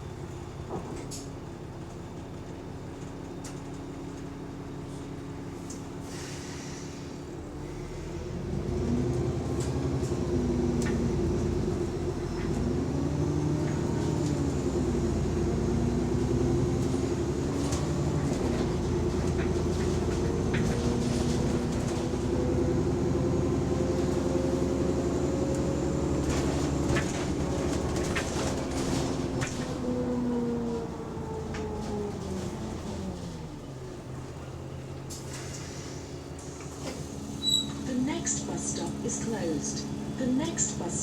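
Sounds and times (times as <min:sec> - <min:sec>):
bus engine running: 0:00.0 - 0:41.0
interior rattles and knocks: 0:26.1 - 0:30.0.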